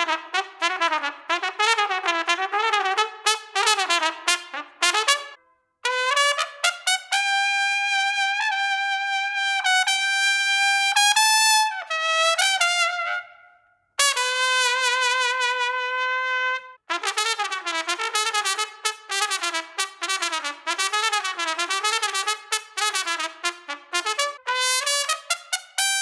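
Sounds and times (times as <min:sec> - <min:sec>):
plastic trumpet playing: 0:00.0 - 0:26.0.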